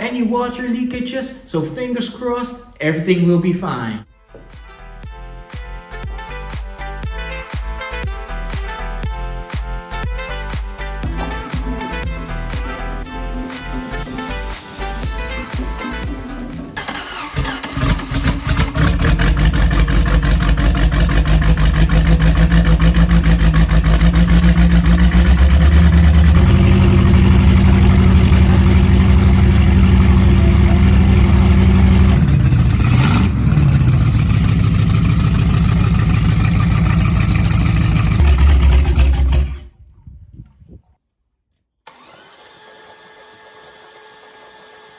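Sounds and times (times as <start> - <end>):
boat engine running: 11.1 - 39.8
boat engine cranking: 15.2 - 39.8.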